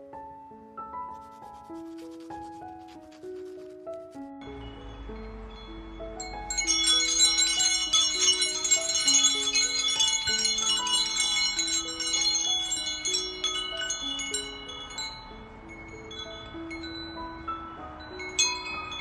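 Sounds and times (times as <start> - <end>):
gentle melody of held notes: 0.0 - 19.0
high tinkling chime-like tones: 4.4 - 19.0.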